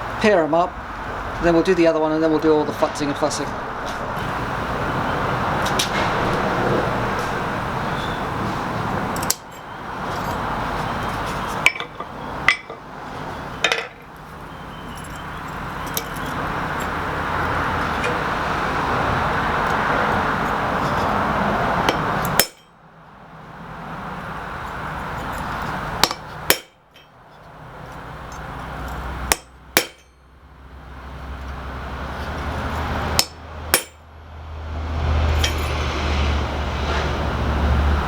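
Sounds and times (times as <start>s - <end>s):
metallic clinks and taps: 11.1s - 12.8s, 14.9s - 16.9s, 35.3s - 35.8s.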